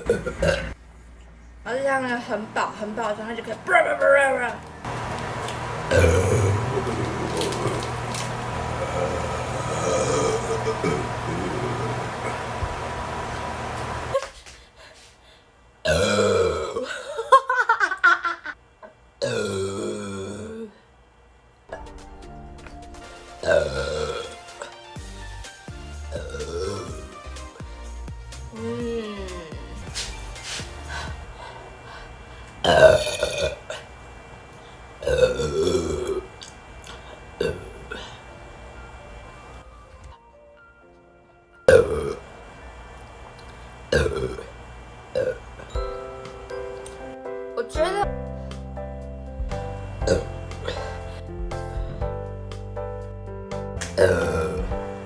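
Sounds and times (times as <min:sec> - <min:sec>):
person burping: 0:00.0 - 0:00.8, 0:05.9 - 0:07.9, 0:08.6 - 0:12.5, 0:15.8 - 0:17.3, 0:18.8 - 0:20.8, 0:23.4 - 0:24.8, 0:26.1 - 0:27.1, 0:32.6 - 0:33.9, 0:35.0 - 0:36.4, 0:37.4 - 0:38.2, 0:41.7 - 0:42.2, 0:43.9 - 0:45.6, 0:50.0 - 0:51.0, 0:53.8 - 0:54.8.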